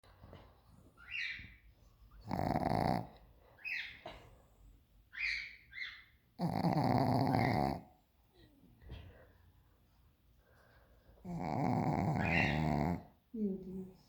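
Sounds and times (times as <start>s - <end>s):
woman snoring: 11.3s - 13.0s.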